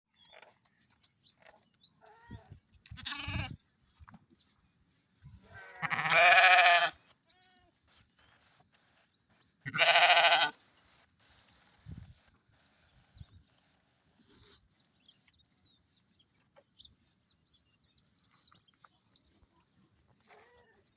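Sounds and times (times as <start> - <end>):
sheep bleating: 3.0 - 3.6, 5.5 - 7.6, 9.7 - 10.6.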